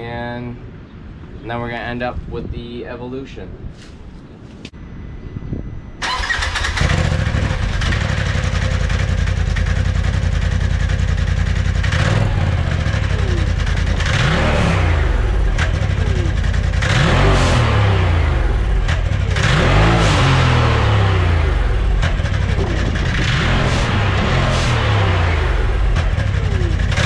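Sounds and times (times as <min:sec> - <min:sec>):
engine idling and revving: 0:06.1 - 0:27.0.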